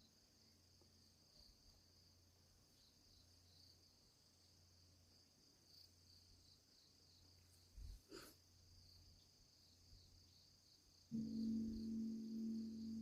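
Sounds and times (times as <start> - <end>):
crickets chirring: 0.0 - 13.0
low hum: 11.1 - 13.0.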